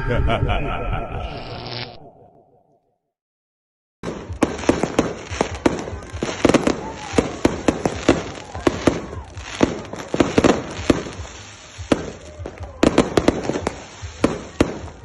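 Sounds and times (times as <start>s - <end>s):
fireworks bangs and pops: 4.0s - 15.0s.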